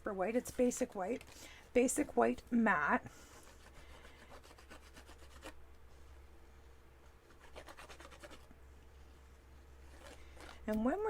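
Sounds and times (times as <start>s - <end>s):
cardstock rubbing and scratching: 3.4s - 5.6s, 7.3s - 8.5s, 9.8s - 11.0s.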